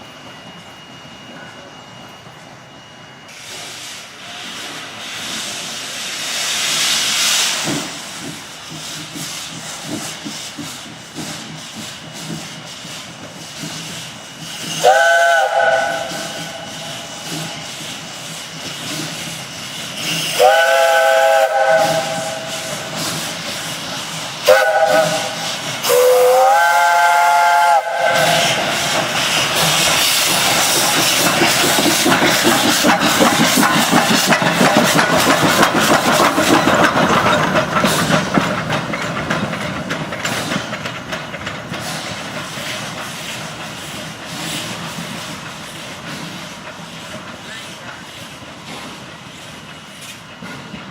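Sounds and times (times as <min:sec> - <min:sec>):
hissing steam: 0:03.0 - 0:50.9
steam locomotive chime whistle: 0:14.4 - 0:17.7, 0:20.1 - 0:23.0, 0:24.4 - 0:28.9.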